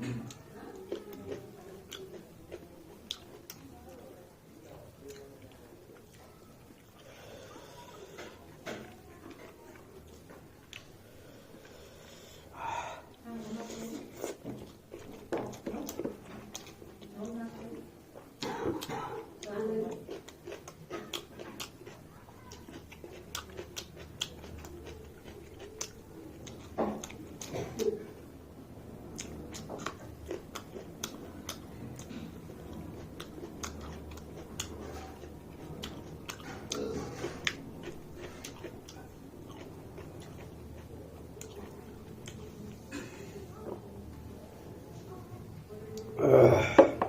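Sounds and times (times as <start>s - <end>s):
person chewing with lip smacks: 0.2s - 3.7s, 14.0s - 17.7s, 18.4s - 28.0s, 29.2s - 42.9s.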